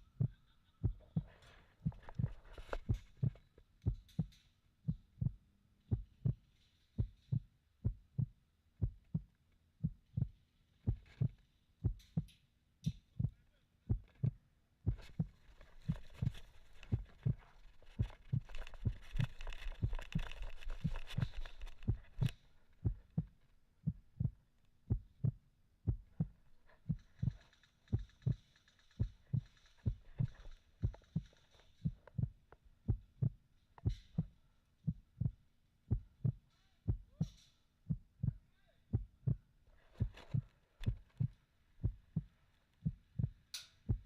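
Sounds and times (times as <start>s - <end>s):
rustling: 1.2s - 3.6s, 14.1s - 23.6s, 26.2s - 32.2s
footsteps jolting camera: 15.1s - 22.4s.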